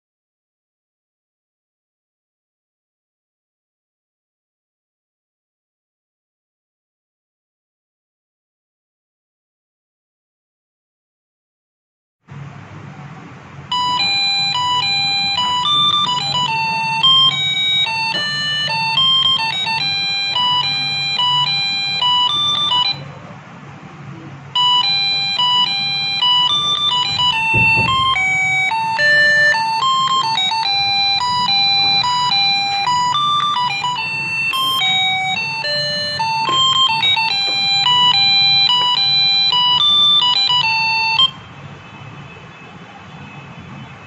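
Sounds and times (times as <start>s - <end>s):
electronic doorbell beeping tune: 13.7s - 23.2s, 24.5s - 41.5s.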